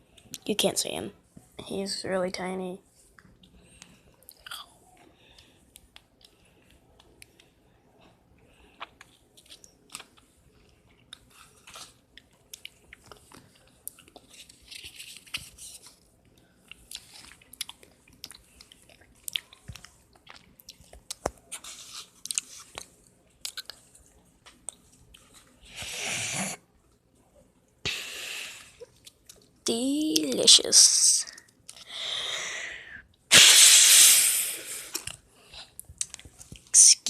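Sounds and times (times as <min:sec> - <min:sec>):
person chewing: 0:04.2 - 0:07.4, 0:08.4 - 0:26.5.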